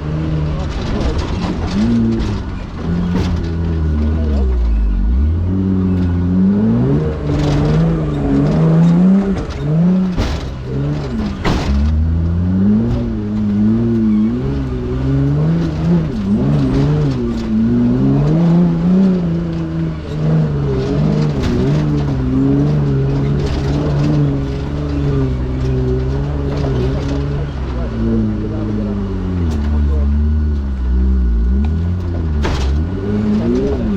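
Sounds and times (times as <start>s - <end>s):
off-road vehicle engine revving: 0.0s - 33.9s
sharp knocks: 7.1s - 27.3s.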